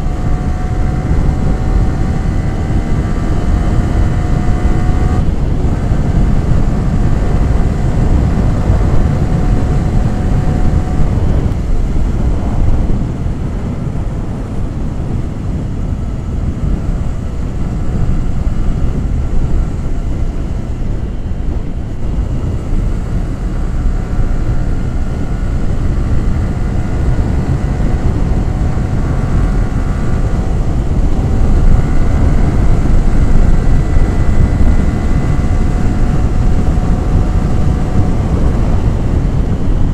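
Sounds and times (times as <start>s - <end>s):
motorcycle engine and exhaust: 0.0s - 39.9s
wind rushing: 0.0s - 39.9s.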